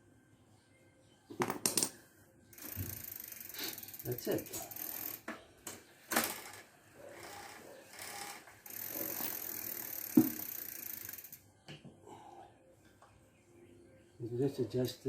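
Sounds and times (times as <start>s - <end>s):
bicycle ratchet clicking: 2.5s - 5.3s, 6.1s - 11.4s.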